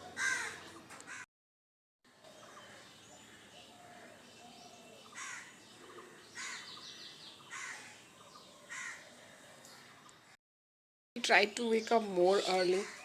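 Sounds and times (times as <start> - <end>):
bird harsh loud call: 0.0 - 1.2, 2.4 - 10.0
small birds chirping and trilling: 0.0 - 1.2, 2.1 - 10.4, 11.2 - 13.0.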